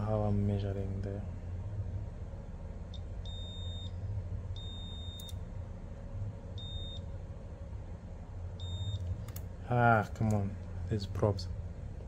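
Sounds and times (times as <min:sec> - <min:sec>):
steady low hum: 0:00.0 - 0:12.0
multimeter beeping: 0:02.9 - 0:04.0, 0:04.6 - 0:05.4, 0:06.6 - 0:07.1, 0:08.6 - 0:09.4.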